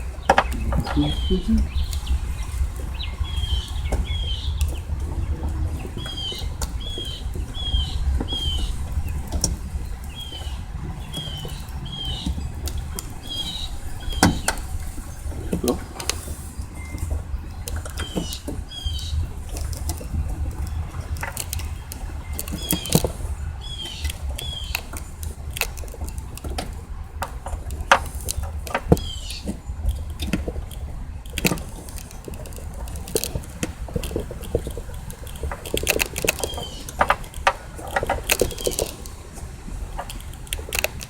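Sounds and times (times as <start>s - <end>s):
low rumble: 0.0s - 17.7s
bird chirping: 0.0s - 25.6s, 28.3s - 30.1s, 34.0s - 39.1s
parts clicking and knocking: 0.0s - 41.0s.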